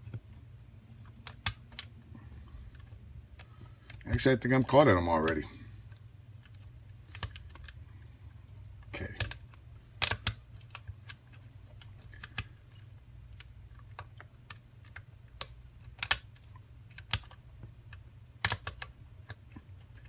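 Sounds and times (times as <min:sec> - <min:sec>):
low steady hum: 0:00.0 - 0:20.0
lock pick clicking in lock: 0:10.0 - 0:11.2, 0:18.4 - 0:19.4.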